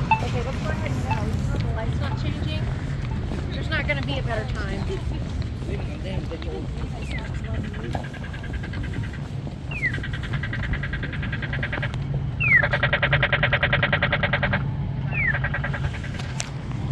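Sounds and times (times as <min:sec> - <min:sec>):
pedestrian signal rapid ticks: 0:09.8 - 0:16.5.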